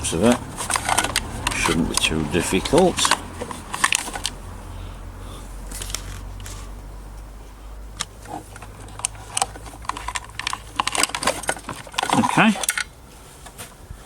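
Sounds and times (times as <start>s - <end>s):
low steady hum: 0.0s - 14.0s
small clicks and rustling of wires: 0.2s - 4.4s, 5.7s - 6.6s, 8.0s - 13.8s.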